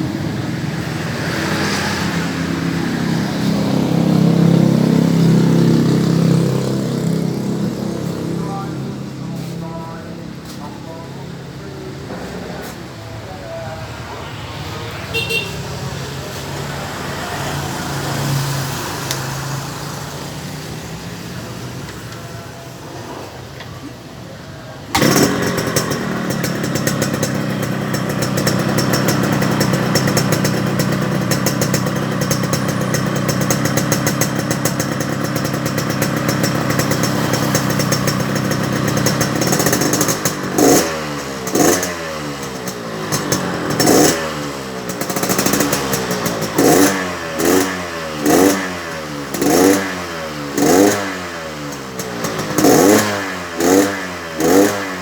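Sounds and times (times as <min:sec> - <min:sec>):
motorcycle engine revving: 0:00.0 - 0:12.7, 0:24.8 - 0:55.0.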